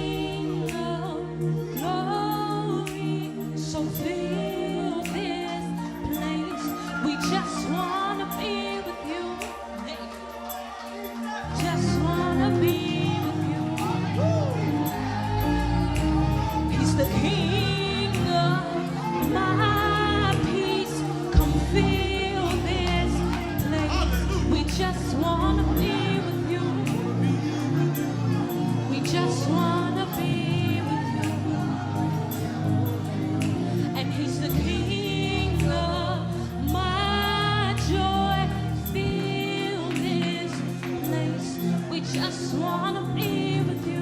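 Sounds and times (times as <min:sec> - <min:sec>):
singer holding long vibrato notes: 0:00.0 - 0:44.0
gospel band with steady bass: 0:11.5 - 0:41.4.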